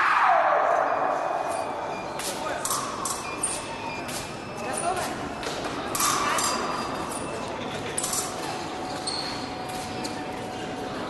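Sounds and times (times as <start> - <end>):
background chatter: 1.0 - 11.0.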